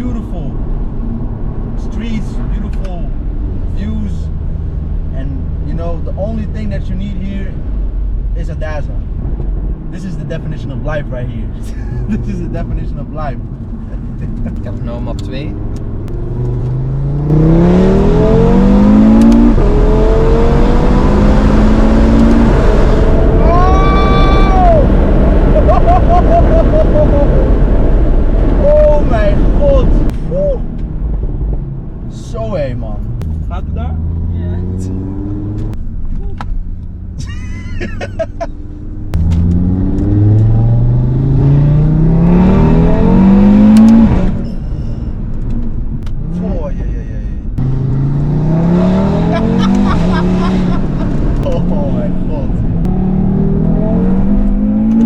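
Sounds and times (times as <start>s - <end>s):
car engine accelerating at full throttle: 9.1s - 55.0s.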